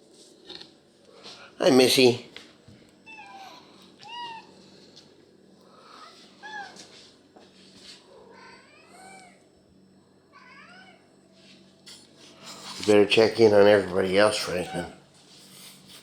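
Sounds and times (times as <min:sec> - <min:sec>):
cat meowing: 0:03.0 - 0:04.5, 0:06.4 - 0:06.9, 0:08.2 - 0:09.4, 0:10.3 - 0:11.0, 0:14.4 - 0:15.0.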